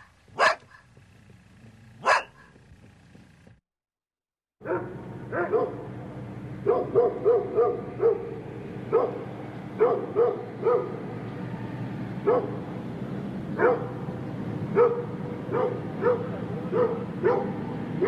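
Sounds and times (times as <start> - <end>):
large dog barking: 0.0 - 0.8, 2.0 - 2.6, 4.6 - 5.9, 6.6 - 11.1, 12.2 - 12.7, 13.6 - 14.0, 14.7 - 18.0.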